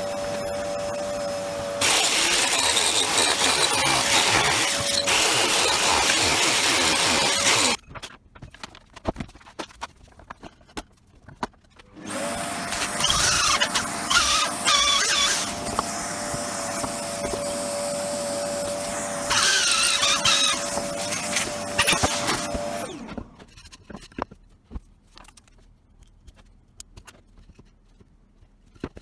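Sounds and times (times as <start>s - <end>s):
disc sander whining: 0.0s - 7.8s, 11.9s - 23.5s.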